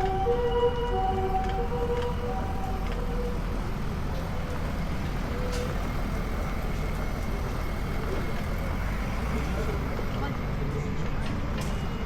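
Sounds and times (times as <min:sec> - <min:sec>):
crossing alarm warning tones: 0:00.0 - 0:06.8
vehicles rumbling: 0:00.0 - 0:12.0.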